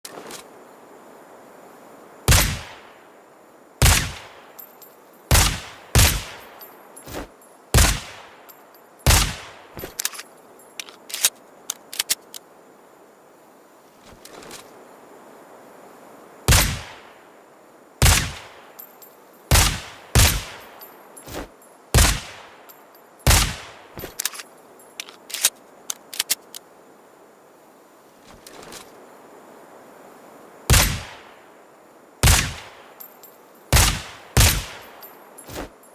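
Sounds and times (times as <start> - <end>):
suppressed pistol shots: 2.3 - 2.8, 3.8 - 4.3, 5.3 - 6.4, 7.8 - 8.2, 9.1 - 10.2, 16.5 - 17.0, 18.0 - 18.5, 19.5 - 20.6, 22.0 - 22.4, 23.3 - 24.4, 30.7 - 31.2, 32.2 - 32.7, 33.7 - 34.8
light metallic clicks and tinkles: 4.3 - 9.1, 9.7 - 12.5, 18.4 - 26.7, 32.6 - 35.9.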